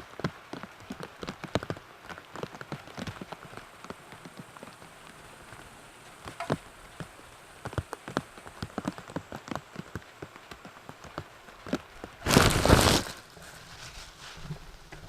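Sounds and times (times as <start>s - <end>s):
faint hiss: 0.0s - 15.0s
raindrops tapping: 0.0s - 15.0s
loud rustling burst: 12.2s - 14.8s.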